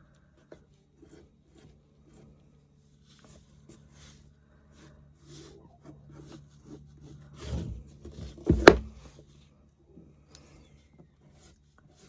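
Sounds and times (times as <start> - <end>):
hand rubbing wooden box: 7.2 - 9.2
soft thump: 8.2 - 9.1
sharp wooden knock: 8.5 - 9.1.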